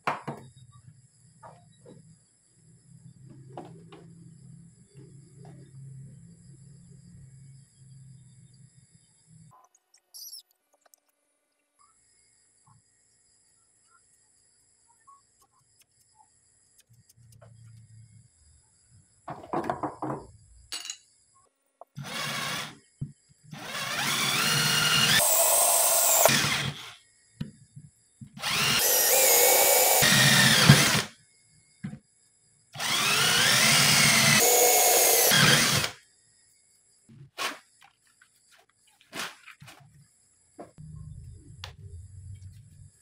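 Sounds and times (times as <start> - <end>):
cordless drill running: 22.0 - 22.8, 23.6 - 27.0, 28.4 - 31.1, 32.8 - 36.0.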